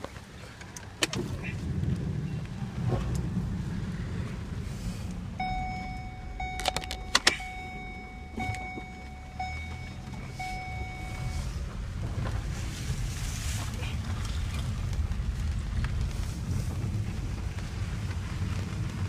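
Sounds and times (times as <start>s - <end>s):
engine rumble: 0.0s - 19.0s
electronic warning tone: 5.4s - 11.5s.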